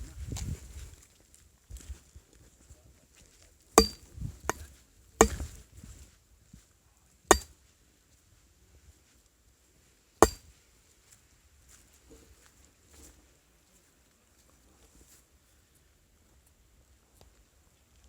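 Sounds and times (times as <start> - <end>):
sharp ringing knocks: 5.2 - 5.4.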